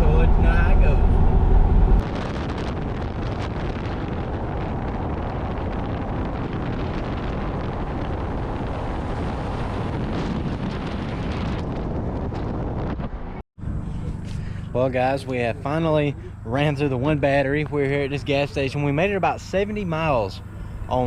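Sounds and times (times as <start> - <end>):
wind rushing over microphone: 0.0 - 14.2.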